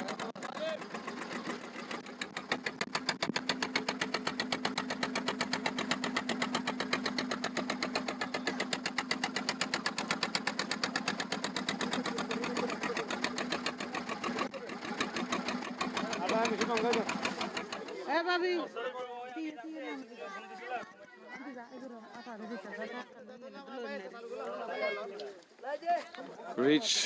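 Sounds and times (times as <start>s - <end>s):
diesel boat engine knocking: 0.0s - 18.1s.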